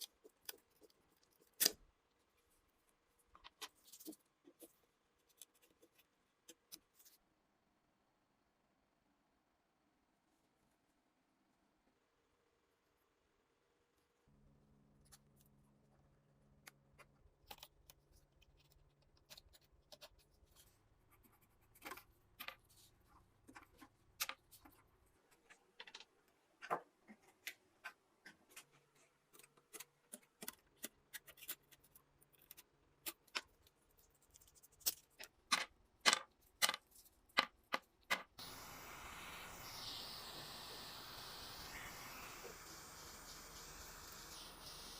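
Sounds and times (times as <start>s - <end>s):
steady hiss: 38.4s - 44.9s.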